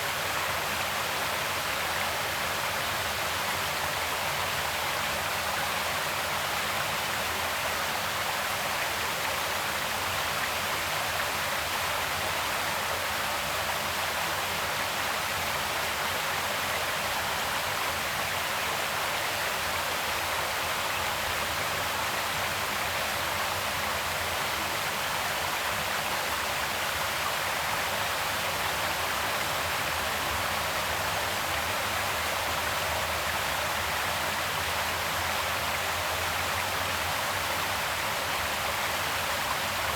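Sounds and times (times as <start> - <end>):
creek water flowing: 15.3 - 39.9.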